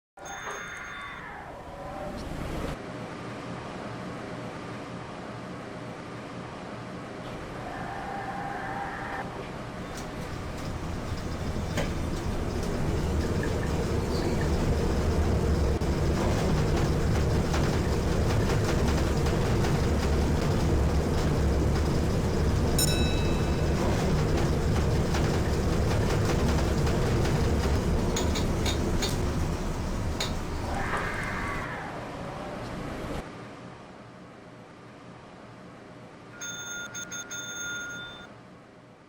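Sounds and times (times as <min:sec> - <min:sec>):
lift hum and rumble: 0:01.2 - 0:33.3
lift ding: 0:22.8 - 0:24.2.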